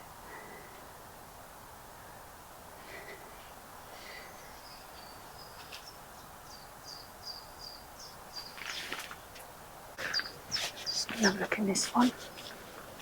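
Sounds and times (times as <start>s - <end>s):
background hiss: 0.0s - 13.0s
small bird chirping: 4.2s - 9.1s, 10.0s - 12.6s
brief rustle: 8.4s - 13.0s.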